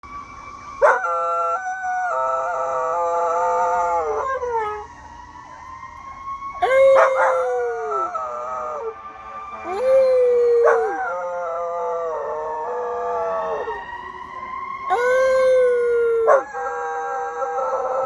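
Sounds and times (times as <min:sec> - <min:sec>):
fire truck siren: 0:00.0 - 0:18.0
puppy howling: 0:00.8 - 0:04.9, 0:06.6 - 0:09.0, 0:09.6 - 0:13.9, 0:14.9 - 0:18.0.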